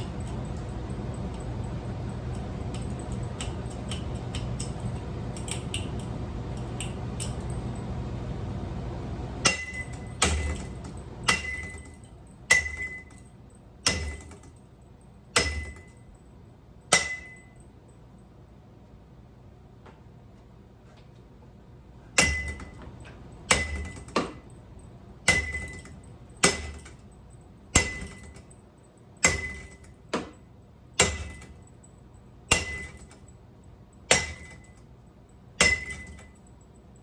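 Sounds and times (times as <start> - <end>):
blows clanging on metal fan parts: 0.0 - 8.1, 9.3 - 17.8, 22.1 - 37.0
low hum with light clicking: 0.0 - 37.0.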